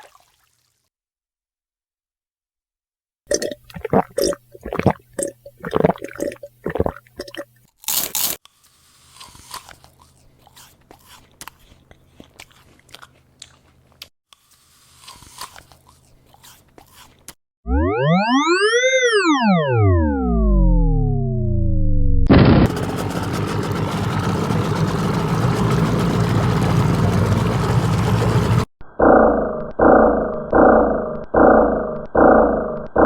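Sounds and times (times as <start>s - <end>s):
crunching and chewing: 3.3s - 17.4s.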